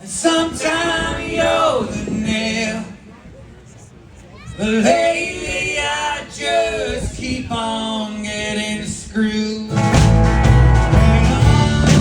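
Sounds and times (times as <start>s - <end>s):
live rock band playing: 9.7s - 12.0s
person singing: 10.4s - 12.0s.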